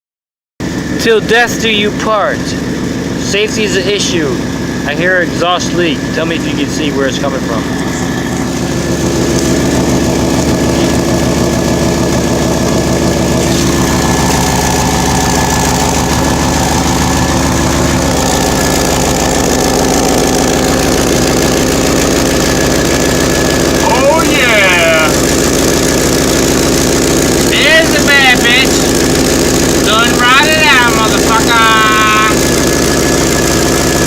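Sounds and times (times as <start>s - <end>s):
engine idling with exhaust leak: 0.6s - 34.0s.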